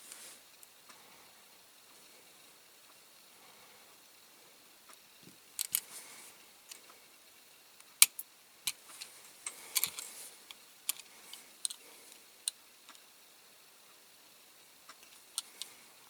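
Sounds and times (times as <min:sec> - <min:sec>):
small tools clicking and tapping: 0:05.6 - 0:05.8, 0:08.0 - 0:11.8.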